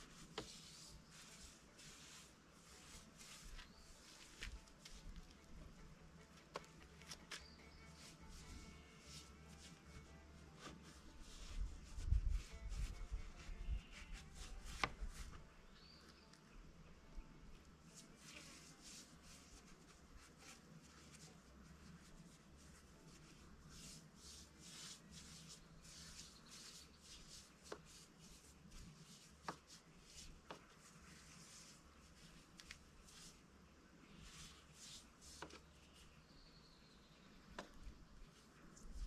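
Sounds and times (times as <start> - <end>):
faint scraping strokes: 0.0 - 15.5, 17.8 - 36.5.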